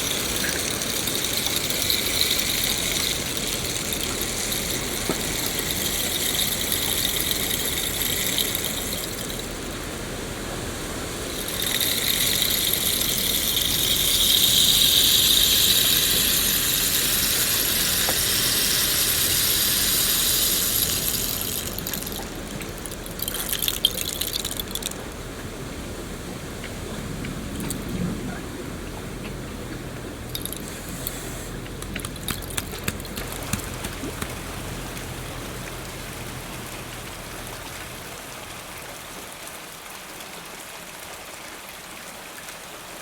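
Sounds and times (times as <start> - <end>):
rain falling in forest: 33.1 - 43.0.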